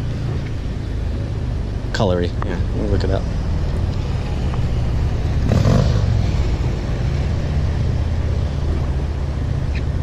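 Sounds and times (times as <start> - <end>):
road traffic rumble: 0.0 - 10.0
vehicle passing: 0.0 - 10.0.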